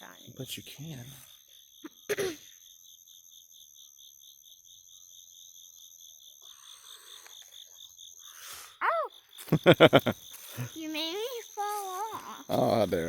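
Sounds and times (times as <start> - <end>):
insects chirping: 0.0 - 13.0
person coughing or grunting: 1.8 - 2.5.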